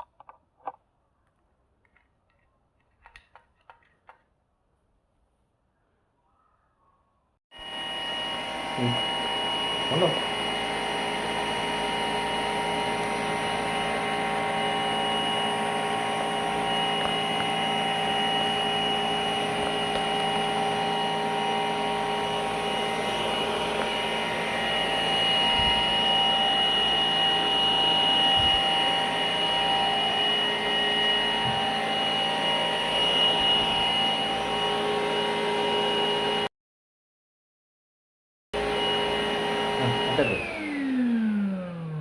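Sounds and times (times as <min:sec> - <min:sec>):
vacuum cleaner motor whine: 0:07.5 - 0:36.5, 0:38.6 - 0:42.0.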